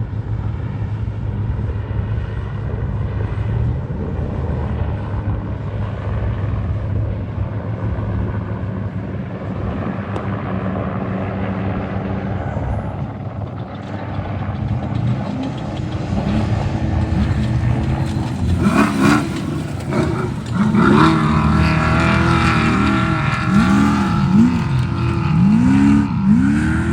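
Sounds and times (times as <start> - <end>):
truck engine revving: 12.6 - 26.9.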